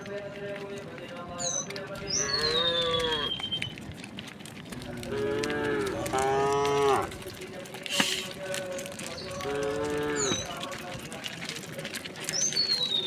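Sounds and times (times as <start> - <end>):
cattle mooing: 2.2 - 3.4, 4.7 - 7.4, 9.3 - 10.7.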